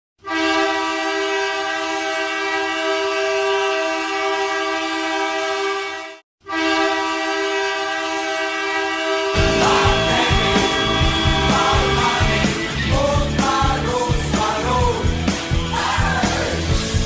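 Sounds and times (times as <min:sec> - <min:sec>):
goal horn two-tone blast: 0:00.2 - 0:12.9.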